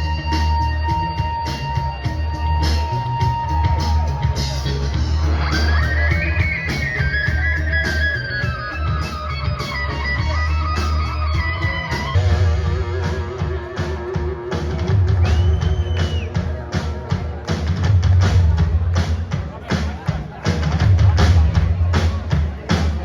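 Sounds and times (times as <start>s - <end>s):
electric guitar lead melody: 0.0s - 15.8s
bass guitar: 0.0s - 23.0s
drum kit with cymbals: 0.0s - 23.0s.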